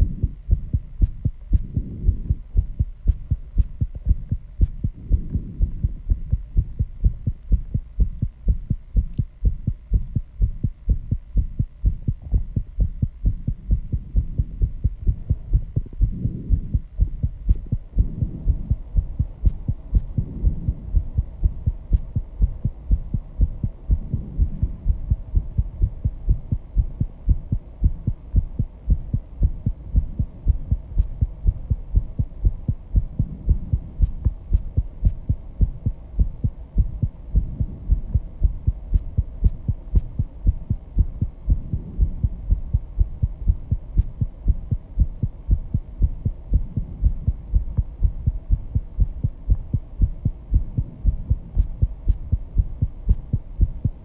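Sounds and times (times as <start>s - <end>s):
fast heartbeat thumps: 0.0s - 54.0s.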